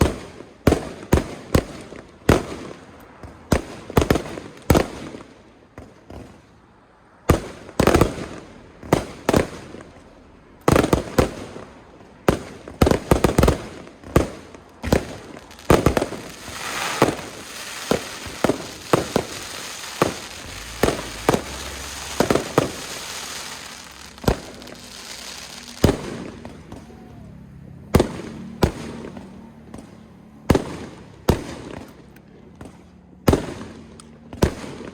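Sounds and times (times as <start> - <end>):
fireworks bangs: 10.7 - 27.1
fireworks crackling hiss: 13.1 - 27.0.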